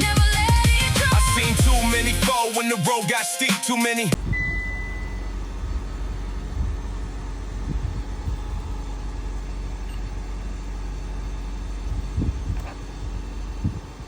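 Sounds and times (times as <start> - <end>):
car engine idling: 4.2 - 14.0.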